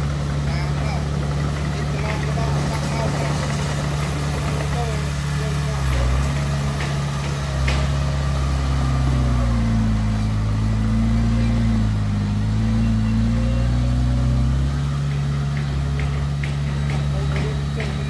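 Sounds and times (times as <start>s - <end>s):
heavy diesel engine revving: 0.0s - 18.0s.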